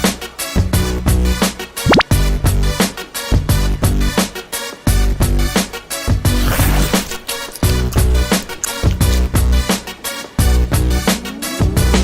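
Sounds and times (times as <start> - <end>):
upbeat music with steady beat: 0.0 - 12.0
rising pitch glide: 1.8 - 2.2.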